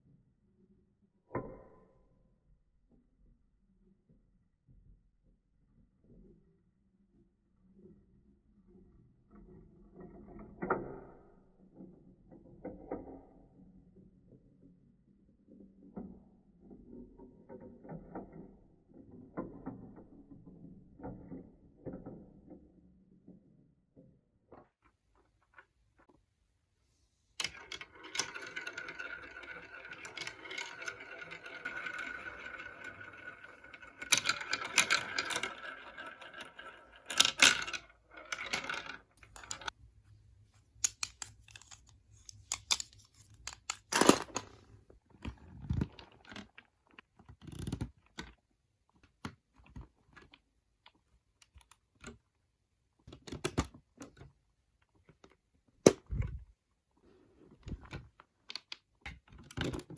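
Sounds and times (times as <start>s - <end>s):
marbles rolling and rattling: 27.4s - 39.8s, 40.8s - 44.7s.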